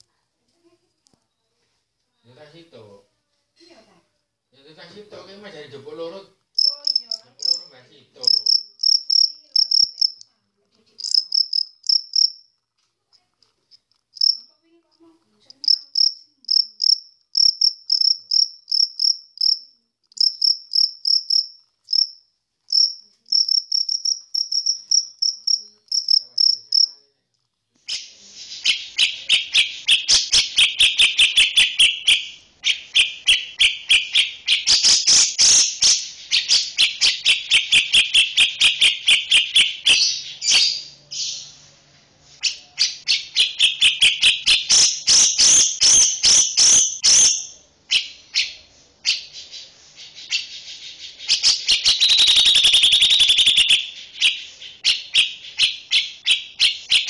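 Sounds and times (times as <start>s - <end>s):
cricket chirping: 6.6s - 10.2s, 11.0s - 12.6s, 14.1s - 14.5s, 15.5s - 27.0s, 51.8s - 53.8s.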